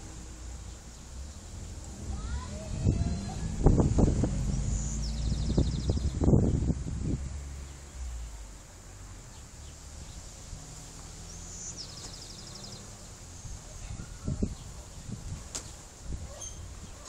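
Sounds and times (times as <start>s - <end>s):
wind gusts on microphone: 0.0s - 8.5s, 9.6s - 17.0s
wind through trees: 0.0s - 17.0s
bird trill: 16.3s - 17.0s.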